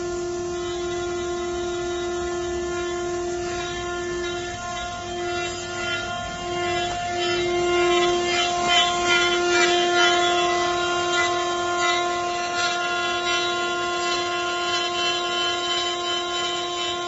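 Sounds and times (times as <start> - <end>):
router spindle high whine: 0.0 - 17.0
irregular rasping noise: 3.4 - 17.0.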